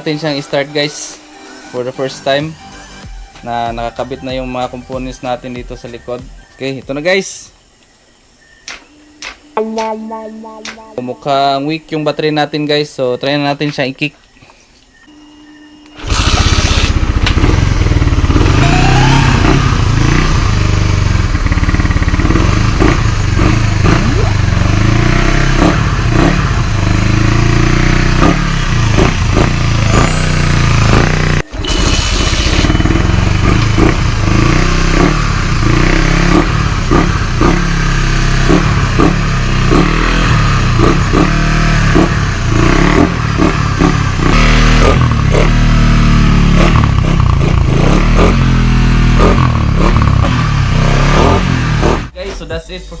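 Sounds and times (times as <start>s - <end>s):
motorcycle engine revving: 16.0s - 52.2s.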